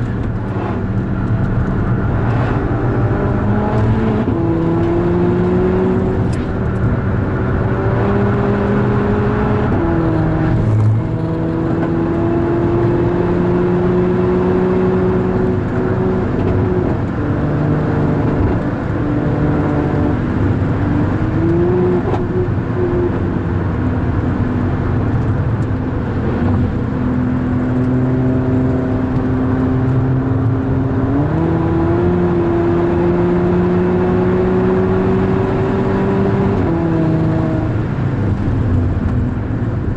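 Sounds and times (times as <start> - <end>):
car engine running hard: 0.0 - 39.9.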